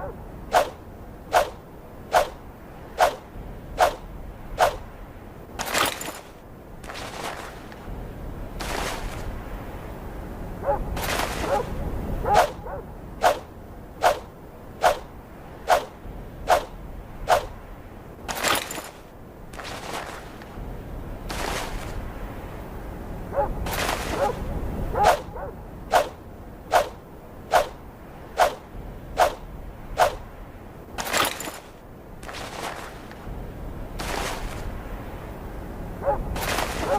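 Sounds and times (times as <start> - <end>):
sword swishing through air: 0.5 - 4.9, 5.6 - 7.7, 10.9 - 12.6, 13.2 - 17.6, 18.3 - 20.3, 23.6 - 24.4, 25.9 - 27.8, 28.4 - 30.3, 31.0 - 33.2, 34.0 - 34.7, 36.3 - 36.9.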